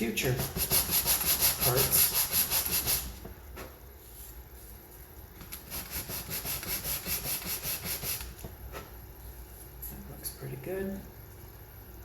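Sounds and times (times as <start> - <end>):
sandpaper rubbing wood: 0.4 - 3.2, 5.7 - 8.3.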